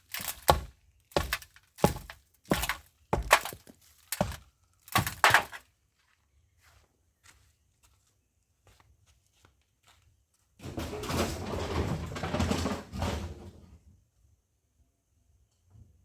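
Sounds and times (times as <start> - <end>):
wall debris crashing: 10.6 - 13.8.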